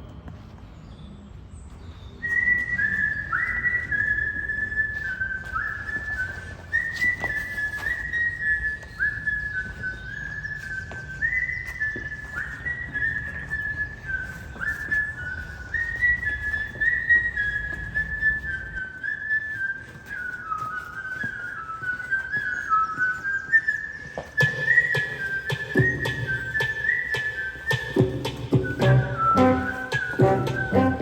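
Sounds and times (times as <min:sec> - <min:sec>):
whistled melody: 0:00.0 - 0:31.0
low music sounds: 0:25.5 - 0:31.0.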